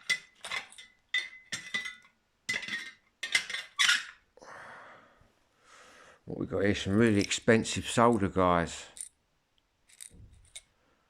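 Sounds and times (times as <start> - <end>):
metal tools clinking on workbench: 0.0 - 4.2, 9.9 - 10.7.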